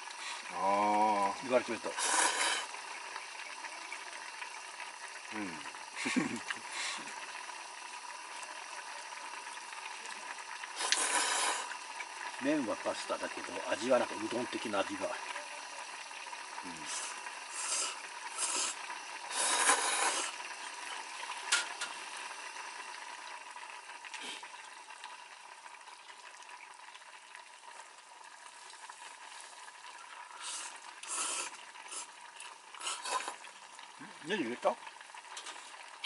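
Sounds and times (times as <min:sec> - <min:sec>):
simmering pot hissing: 0:00.0 - 0:36.0.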